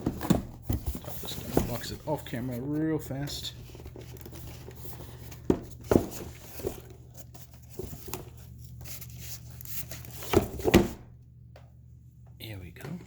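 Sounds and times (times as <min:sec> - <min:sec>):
packaging rustling: 0:00.0 - 0:11.0
low steady hum: 0:00.0 - 0:13.0.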